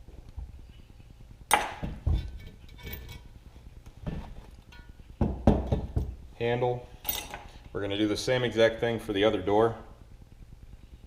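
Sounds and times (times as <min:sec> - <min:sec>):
metal stove door hardware clinking: 0:07.0 - 0:07.5.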